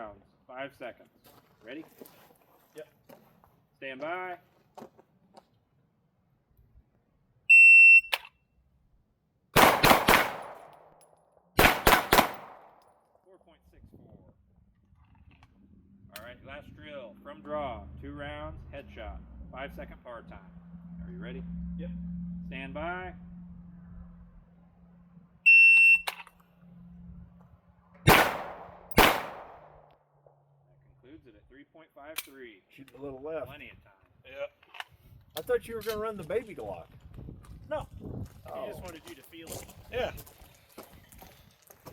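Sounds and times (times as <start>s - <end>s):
shot timer beep: 7.5s - 8.3s, 25.5s - 26.2s
handgun shots with echo: 9.6s - 11.0s, 11.6s - 12.8s, 28.1s - 29.9s
high-pitched timer beep: 25.5s - 26.2s.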